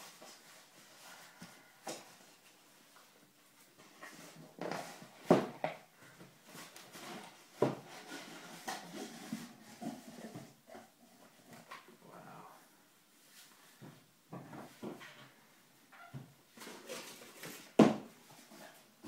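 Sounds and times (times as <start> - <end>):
cardboard rustling and scraping: 6.2 - 11.7.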